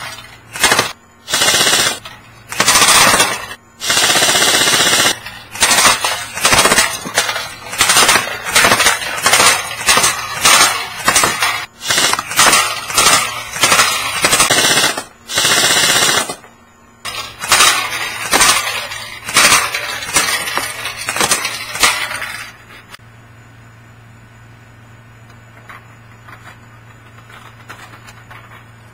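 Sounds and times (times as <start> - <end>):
airsoft rifle firing bursts: 0.6 - 16.4, 17.4 - 20.4.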